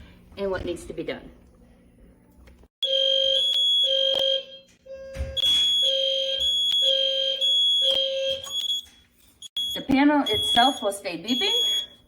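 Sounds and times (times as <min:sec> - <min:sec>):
fire alarm pulsing: 0:02.8 - 0:12.0.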